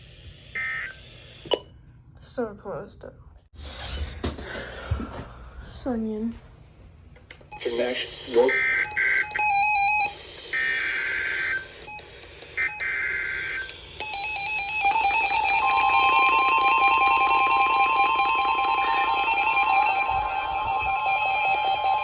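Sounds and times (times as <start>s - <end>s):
steady tone: 15.0s - 22.0s.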